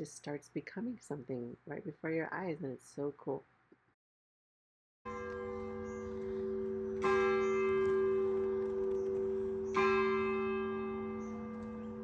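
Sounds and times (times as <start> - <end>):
large bell tolling: 5.1 - 12.0.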